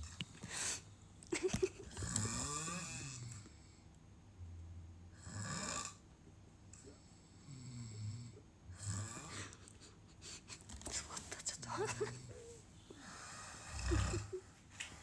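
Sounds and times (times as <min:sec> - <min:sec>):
person snoring: 0:01.9 - 0:03.4, 0:07.4 - 0:09.6, 0:13.0 - 0:14.5.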